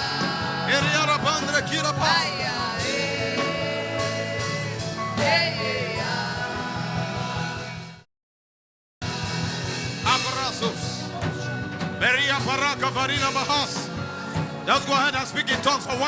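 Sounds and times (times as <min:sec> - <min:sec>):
worship singing: 0:00.0 - 0:07.7.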